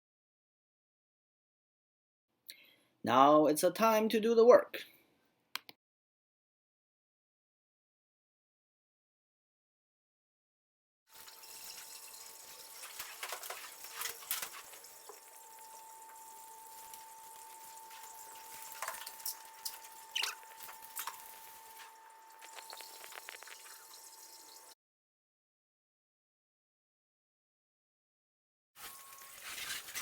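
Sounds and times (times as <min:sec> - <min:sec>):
water splashes and drips: 0:11.1 - 0:24.8
faint steady whine: 0:13.9 - 0:24.7.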